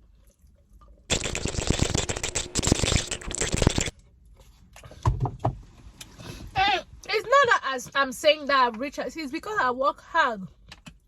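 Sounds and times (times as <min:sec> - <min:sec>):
dense crackling with clicks: 0:01.1 - 0:04.0.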